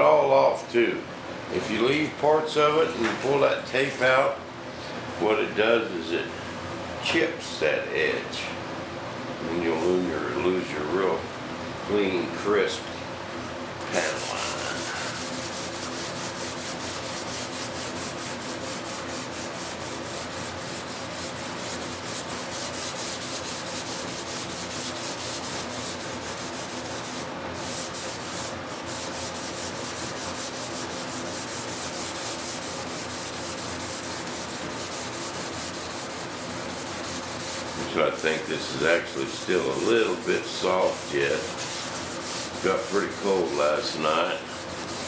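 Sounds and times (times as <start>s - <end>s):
sandpaper rasping: 14.0s - 45.0s.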